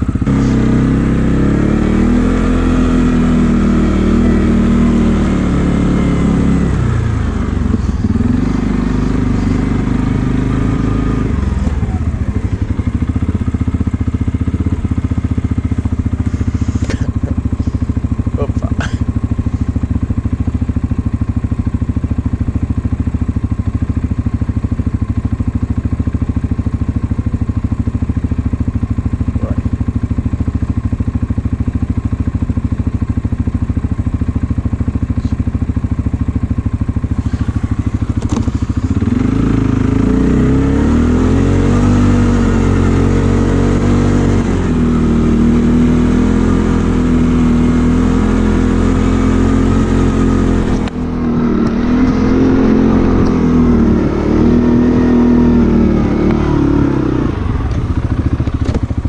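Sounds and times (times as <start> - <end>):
atv engine idling and revving: 0.0 - 59.0.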